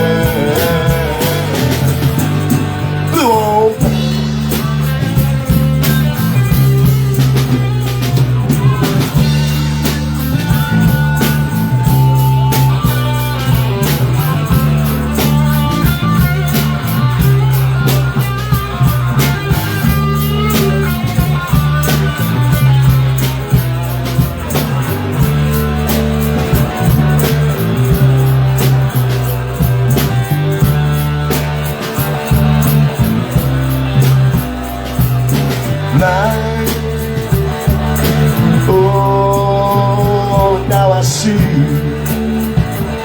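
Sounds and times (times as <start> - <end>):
rock band instrumental: 0.0 - 43.0.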